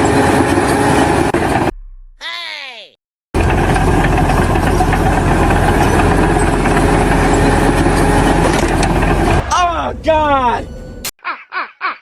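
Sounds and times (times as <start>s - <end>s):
loud engine rumbling: 3.4s - 11.1s.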